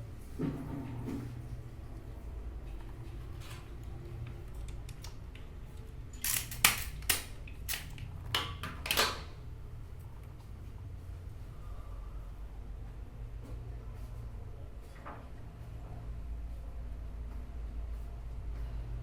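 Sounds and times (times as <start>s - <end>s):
steady low hum: 9.3s - 19.0s.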